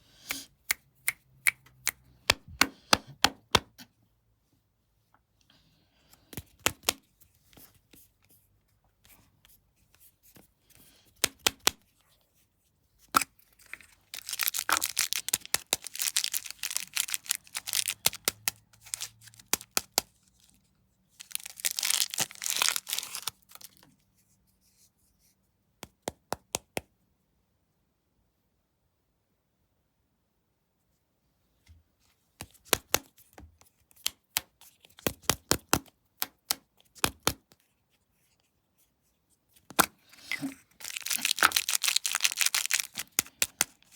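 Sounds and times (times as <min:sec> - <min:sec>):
snack wrapper tearing and crinkling: 0:13.2 - 0:20.5, 0:21.2 - 0:23.8, 0:39.8 - 0:43.9.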